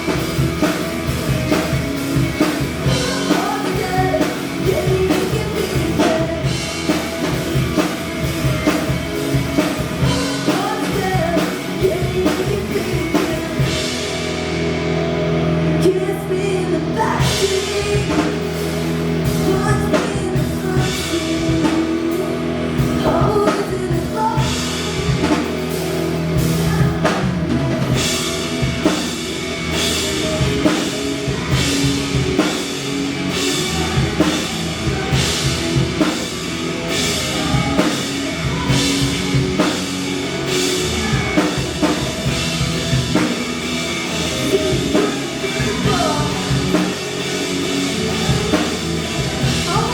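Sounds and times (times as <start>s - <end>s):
drum kit: 0.0s - 49.9s
rock band playing live: 0.0s - 49.9s
person singing: 2.4s - 7.4s, 9.6s - 14.3s, 15.7s - 25.6s, 29.9s - 42.4s, 44.0s - 49.9s.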